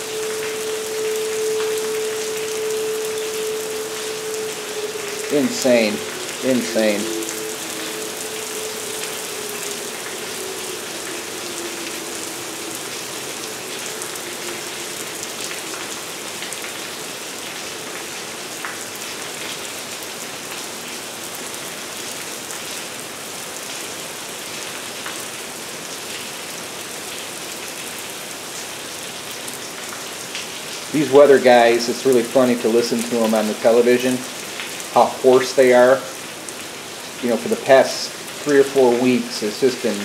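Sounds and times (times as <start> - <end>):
heavy rain falling: 0.0 - 40.0.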